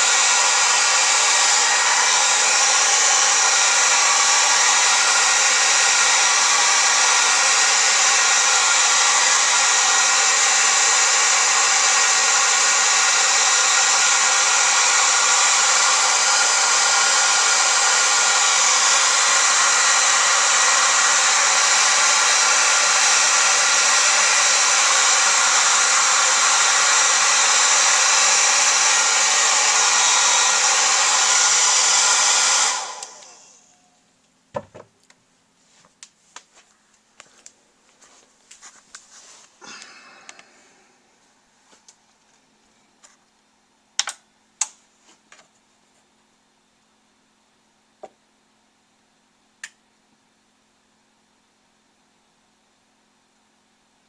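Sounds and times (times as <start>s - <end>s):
hair dryer blowing air: 0.0s - 33.9s, 39.6s - 40.9s
hair dryer winding down: 0.0s - 33.9s, 39.6s - 40.6s.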